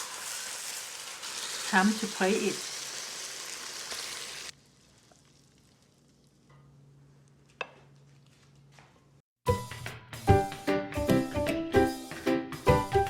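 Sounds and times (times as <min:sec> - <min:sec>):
stir-fry sizzling in a pan: 0:00.0 - 0:05.9.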